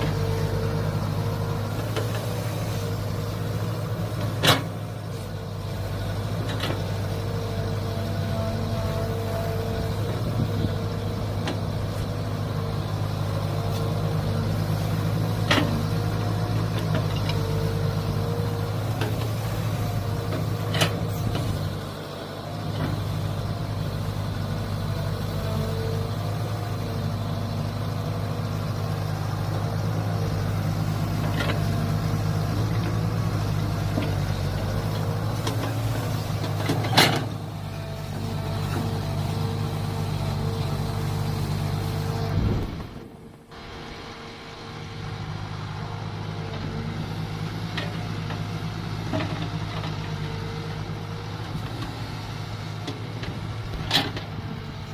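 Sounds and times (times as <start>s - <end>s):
excavator engine running: 0.0s - 54.9s.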